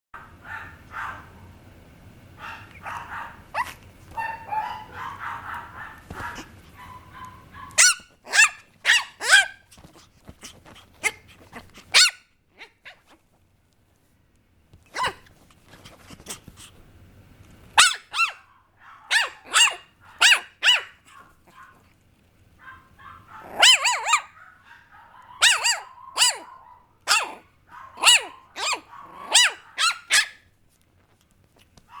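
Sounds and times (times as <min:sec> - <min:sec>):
puppy yapping: 0:00.2 - 0:01.4, 0:02.4 - 0:13.2, 0:14.9 - 0:15.3, 0:17.8 - 0:21.9, 0:22.6 - 0:30.5, 0:31.8 - 0:32.0.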